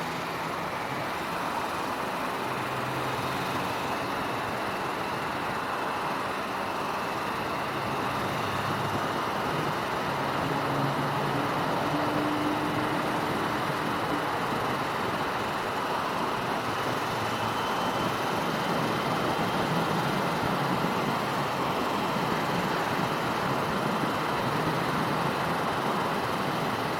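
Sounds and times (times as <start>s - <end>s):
wind and road noise: 0.0s - 26.9s.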